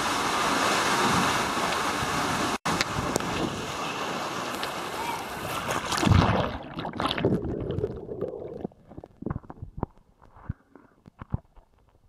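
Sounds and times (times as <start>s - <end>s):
rush of water and wind: 0.0s - 7.6s.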